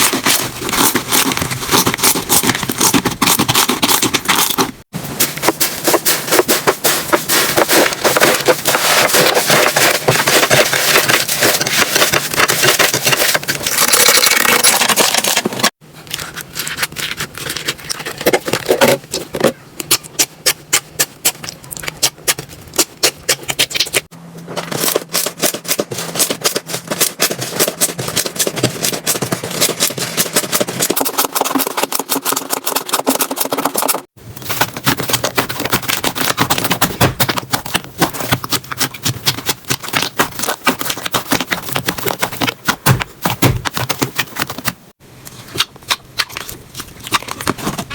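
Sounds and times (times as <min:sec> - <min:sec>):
slime crackling and popping: 0:07.7 - 0:15.8.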